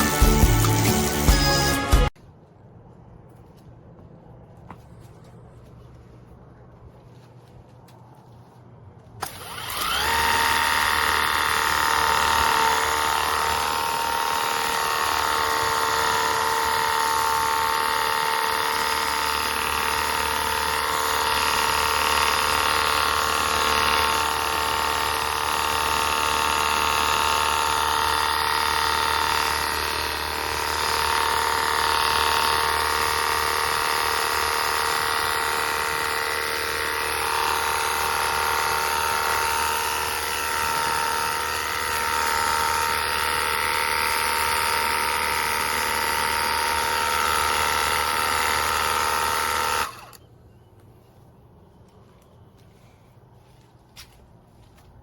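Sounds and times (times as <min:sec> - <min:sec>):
pressure washer motor whine: 0:09.2 - 0:50.2.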